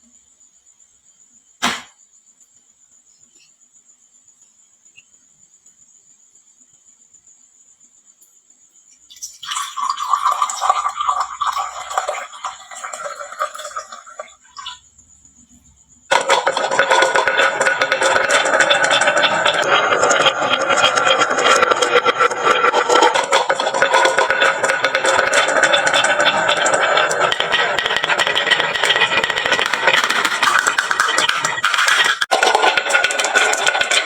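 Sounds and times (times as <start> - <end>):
sharp click: 1.6 - 2.0
insect-like chirring: 2.1 - 34.0
marbles clattering down wooden run: 9.5 - 14.8, 16.1 - 34.0.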